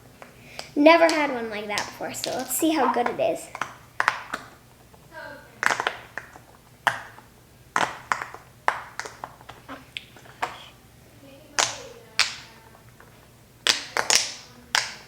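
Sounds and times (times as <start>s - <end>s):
pop-it fidget toy popping: 5.6s - 9.5s.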